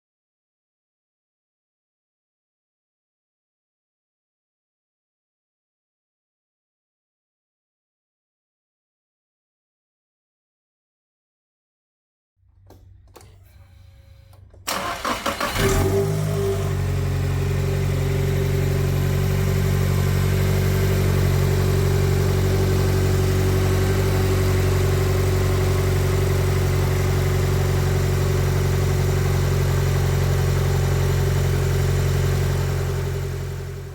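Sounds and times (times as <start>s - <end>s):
car engine idling: 14.6s - 33.9s.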